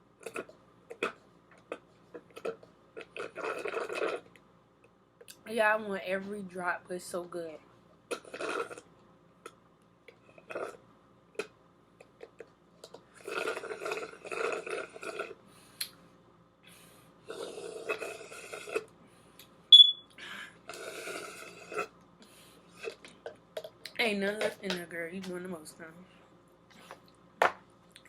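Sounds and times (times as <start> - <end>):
slurping through a straw: 0.2 - 4.4, 8.1 - 8.9, 10.3 - 10.8, 13.1 - 15.4, 17.3 - 18.9, 20.7 - 22.0.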